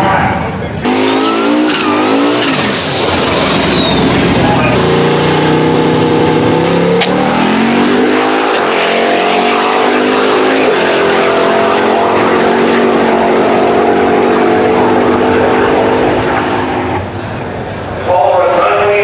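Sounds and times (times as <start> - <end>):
car engine revving at full throttle: 0.0 - 18.1
turbo whistle: 0.9 - 5.8.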